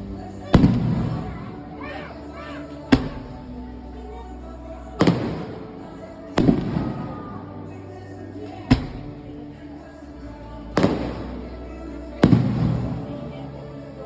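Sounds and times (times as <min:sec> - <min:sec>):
background music: 0:00.0 - 0:14.0
fireworks booming: 0:00.5 - 0:01.4, 0:12.2 - 0:13.0.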